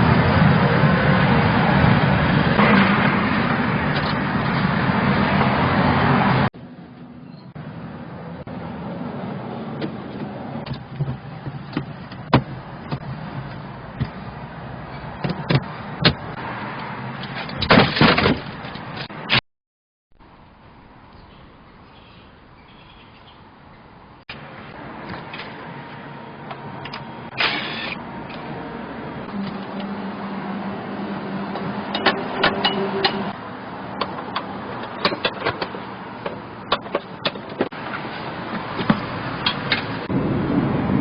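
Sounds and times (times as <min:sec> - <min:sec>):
engine running loudly: 0:00.0 - 0:06.5
scattered clicks and knocks: 0:09.8 - 0:14.2, 0:31.5 - 0:40.0.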